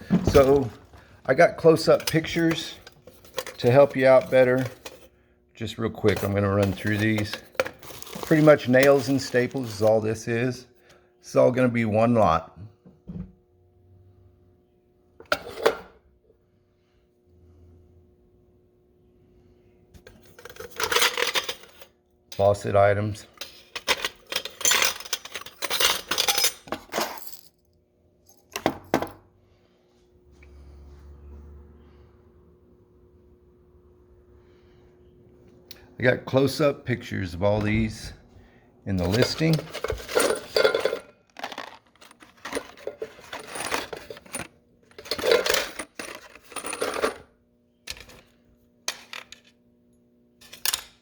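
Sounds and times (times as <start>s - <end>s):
nails clinking in a metal can: 23.4s - 27.5s, 39.0s - 47.2s.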